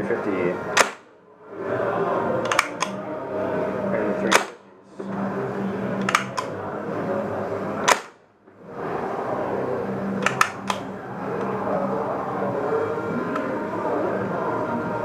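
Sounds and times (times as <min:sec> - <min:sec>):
steady hum: 0:00.0 - 0:15.0
airsoft gun shots: 0:00.8 - 0:01.0, 0:07.9 - 0:08.2
gun action clicks: 0:02.5 - 0:03.0, 0:06.0 - 0:06.5, 0:10.2 - 0:10.8.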